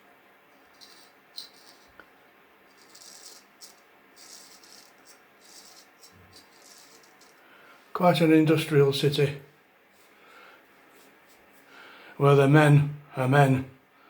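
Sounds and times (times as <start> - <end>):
razor scraping stubble: 2.8 - 7.4.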